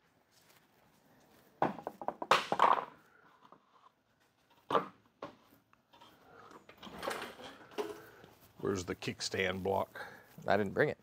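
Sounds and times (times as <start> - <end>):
sharp knocks and clattering thuds: 1.6 - 3.0, 4.6 - 5.5.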